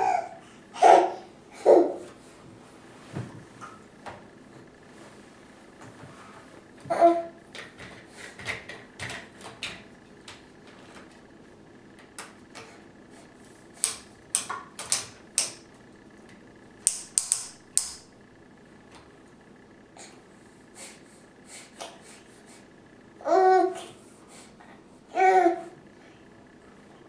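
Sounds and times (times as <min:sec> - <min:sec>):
child sniffing: 0:20.0 - 0:22.7, 0:23.8 - 0:24.9.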